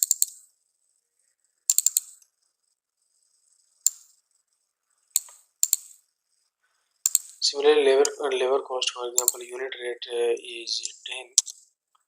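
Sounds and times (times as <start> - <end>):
keyboard and mouse clicks: 0.0 - 0.5, 1.6 - 2.3, 3.8 - 4.2, 5.1 - 6.1, 7.0 - 7.4, 9.2 - 9.5, 10.8 - 12.0.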